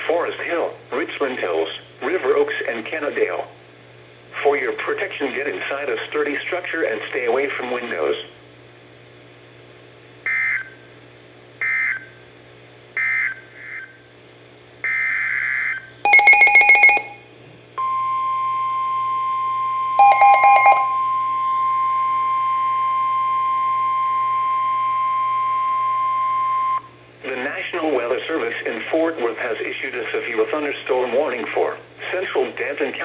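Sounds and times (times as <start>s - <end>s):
electronic alarm beeps: 14.9s - 17.2s, 17.8s - 26.9s
steady warning alarm tone: 14.9s - 18.8s, 19.8s - 26.9s.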